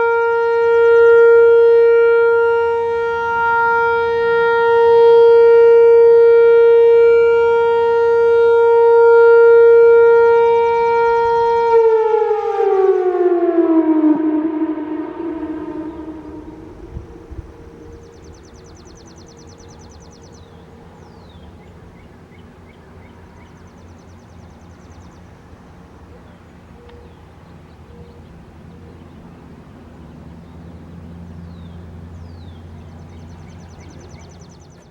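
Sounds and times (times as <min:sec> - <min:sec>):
low steady rumble: 0:00.0 - 0:34.9
birds calling: 0:15.2 - 0:34.9.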